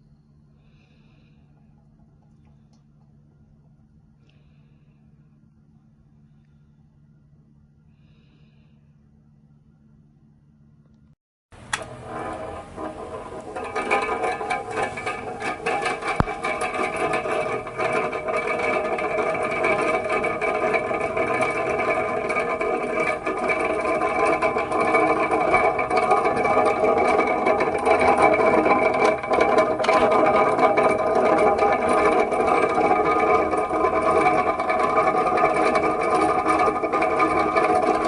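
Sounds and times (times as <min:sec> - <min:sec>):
fan motor hum: 0:11.6 - 0:38.0.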